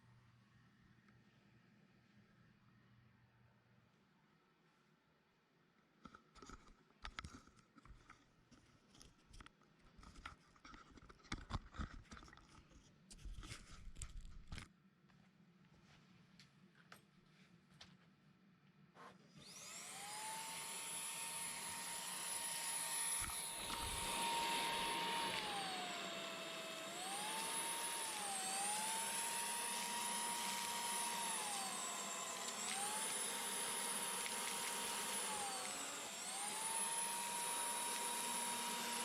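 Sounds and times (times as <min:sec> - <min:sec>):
vacuum motor whine: 0:19.3 - 0:39.0.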